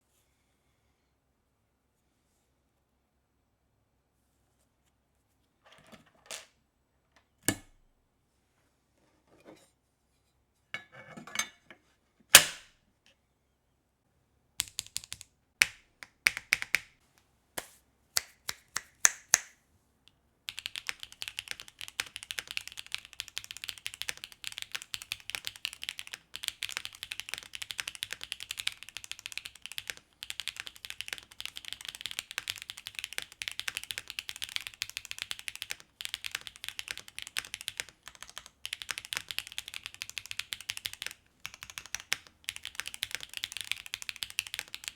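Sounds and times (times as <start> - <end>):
mechanical keyboard typing: 14.6 - 15.3, 20.5 - 44.9.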